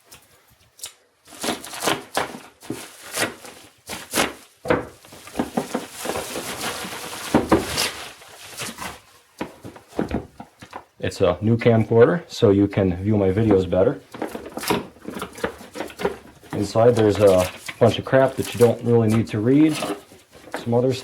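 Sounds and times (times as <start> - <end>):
cardboard and packing rustling: 1.2 - 11.0, 13.2 - 21.0
packaging tearing: 1.3 - 9.1, 14.2 - 21.0
handling knocks: 4.6 - 6.6, 8.8 - 10.9.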